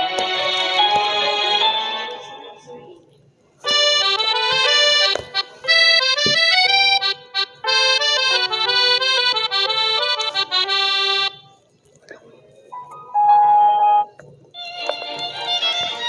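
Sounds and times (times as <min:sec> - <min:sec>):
ringtone instrumental melody: 0:00.0 - 0:02.6, 0:03.7 - 0:11.4, 0:12.8 - 0:16.0.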